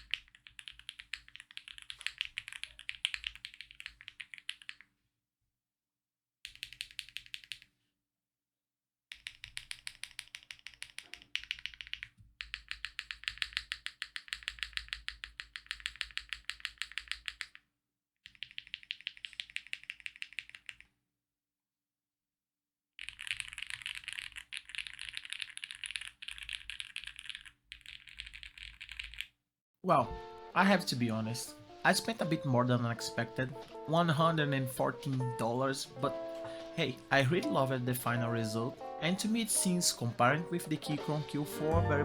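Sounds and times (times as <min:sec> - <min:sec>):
mechanical keyboard typing: 0:00.0 - 0:04.8, 0:06.5 - 0:07.7, 0:09.1 - 0:17.6, 0:18.3 - 0:20.8, 0:23.0 - 0:29.3.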